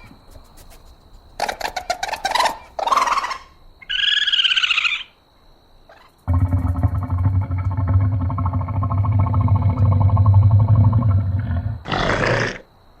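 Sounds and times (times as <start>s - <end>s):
animal hissing: 5.9s - 12.7s
animal pulsing growl: 6.3s - 12.7s.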